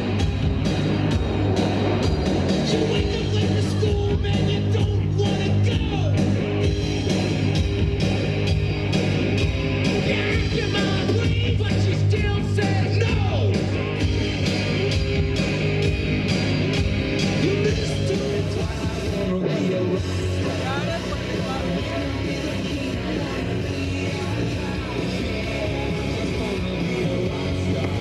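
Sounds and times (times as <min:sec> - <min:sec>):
drum beat: 0:00.0 - 0:06.1
bass: 0:00.0 - 0:28.0.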